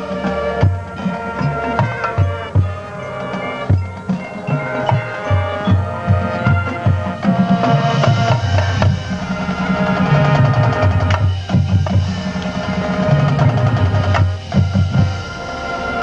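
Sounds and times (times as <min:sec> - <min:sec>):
drum and percussion strikes: 0:00.0 - 0:16.0
marching band playing: 0:00.0 - 0:16.0.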